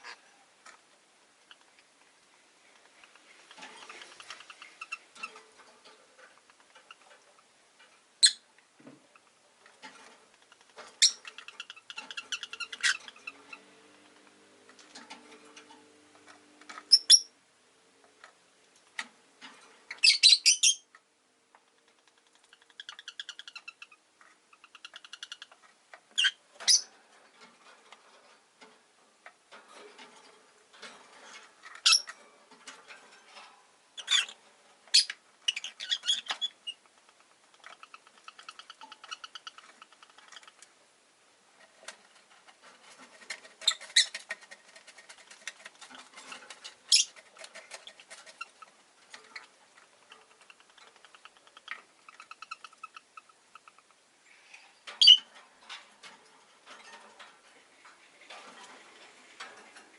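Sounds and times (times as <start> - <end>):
lovebirds chattering: 10.4 - 13.6, 22.1 - 26.9, 34.0 - 40.7, 43.6 - 54.0.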